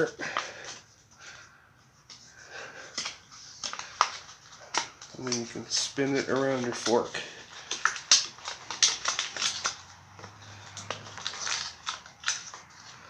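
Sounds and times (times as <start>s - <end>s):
plastic tool crinkling and clicking: 2.8s - 13.0s.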